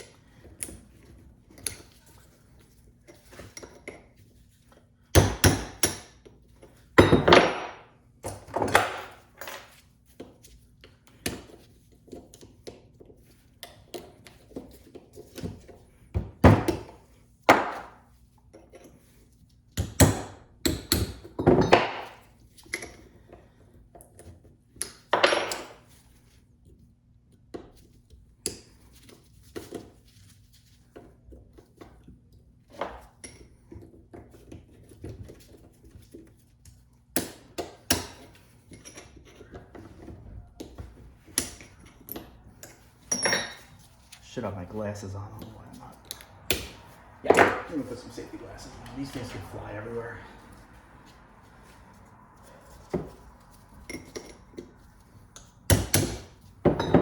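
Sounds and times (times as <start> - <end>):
hammer striking steel joint: 55.4 - 57.0.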